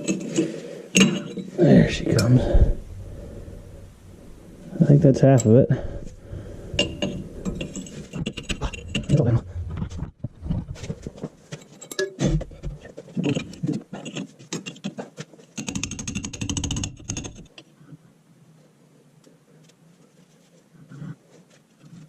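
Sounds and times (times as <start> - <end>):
metal tool scraping seal: 6.8 - 9.3.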